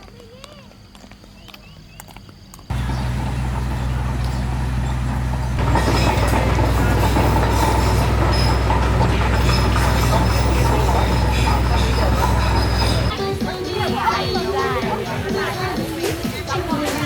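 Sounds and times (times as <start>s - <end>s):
engine humming: 2.7s - 13.2s.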